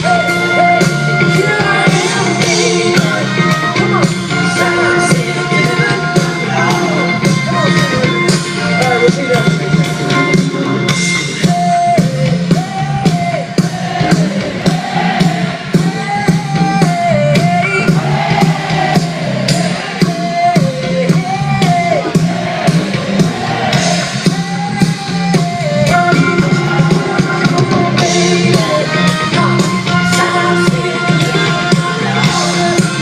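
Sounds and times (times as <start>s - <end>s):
person singing lead vocal: 0.0s - 10.9s, 25.9s - 33.0s
bass: 0.0s - 33.0s
drum beat: 0.0s - 33.0s
guitar: 0.0s - 33.0s.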